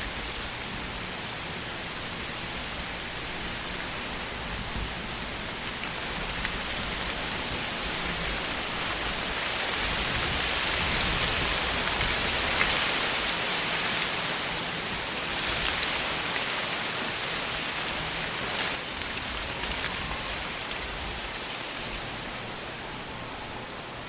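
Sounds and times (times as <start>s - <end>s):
wind rustling leaves: 0.0s - 24.0s.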